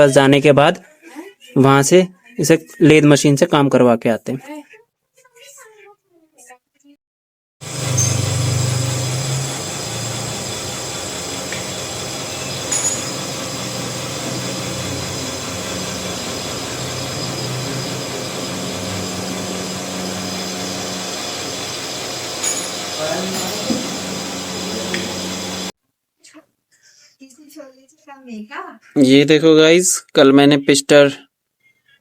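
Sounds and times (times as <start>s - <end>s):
lathe humming: 7.6s - 25.7s.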